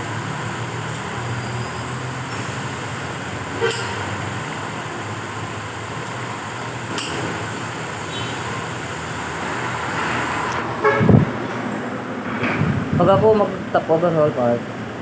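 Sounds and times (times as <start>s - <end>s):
road traffic hum: 0.0s - 15.0s.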